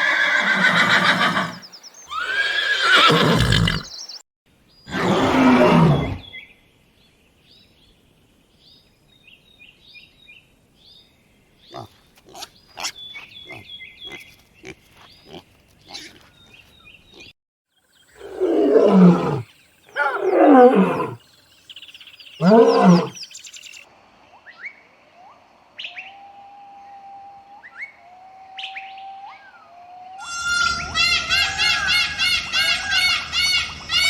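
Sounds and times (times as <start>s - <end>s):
big cat roaring: 4.9s - 6.2s, 18.2s - 21.2s, 22.4s - 23.2s.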